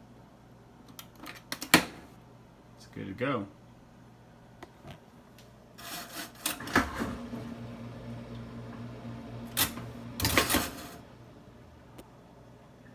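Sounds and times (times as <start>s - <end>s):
steady low hum: 7.1s - 12.9s.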